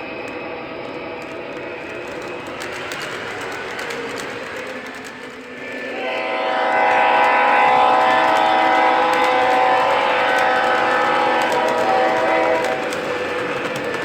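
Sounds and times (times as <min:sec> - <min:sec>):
model train horn through speaker: 0:05.8 - 0:13.0.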